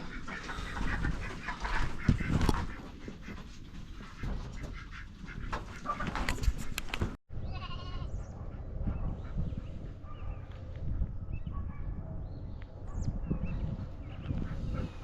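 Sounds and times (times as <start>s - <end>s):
farm animals bleating: 7.4s - 8.2s.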